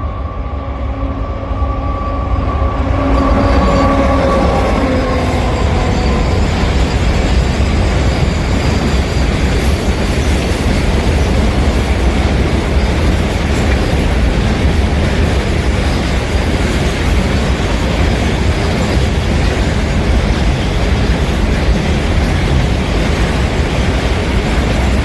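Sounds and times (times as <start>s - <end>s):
train wheels rumbling on rails: 0.0s - 25.0s
wheels clickety-clack: 3.6s - 25.0s.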